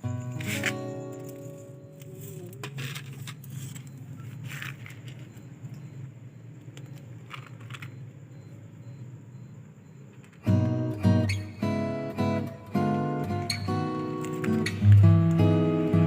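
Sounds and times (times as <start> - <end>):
steady low hum: 0.0 - 13.4
rustling crackling sounds: 0.1 - 6.0.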